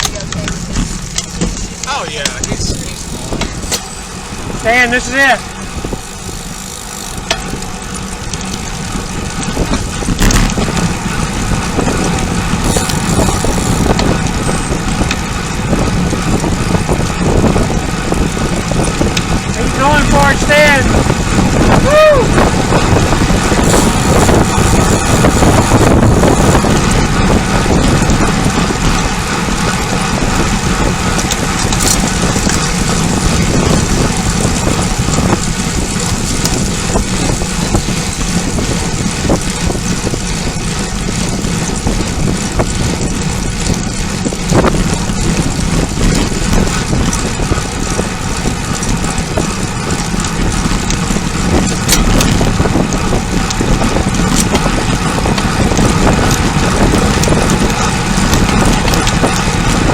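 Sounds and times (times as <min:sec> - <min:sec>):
wind rush on microphone: 0:00.0 - 0:59.9.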